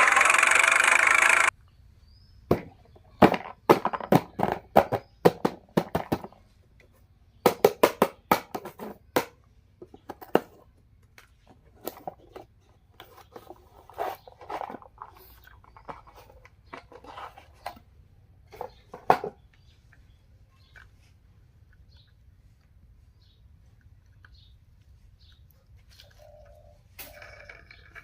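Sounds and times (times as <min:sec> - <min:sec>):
plastic toys clicking and knocking: 0:00.0 - 0:01.5, 0:02.5 - 0:21.0, 0:27.0 - 0:28.0
toy electronic engine sound: 0:00.0 - 0:01.5.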